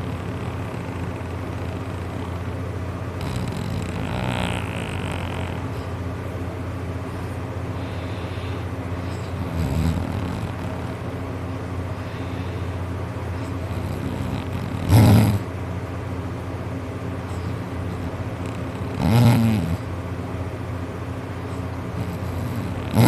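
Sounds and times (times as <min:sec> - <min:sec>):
steady low hum: 0:00.0 - 0:23.0
man snoring: 0:03.2 - 0:05.7, 0:09.3 - 0:11.0, 0:13.7 - 0:15.4, 0:18.4 - 0:19.9, 0:22.0 - 0:23.0.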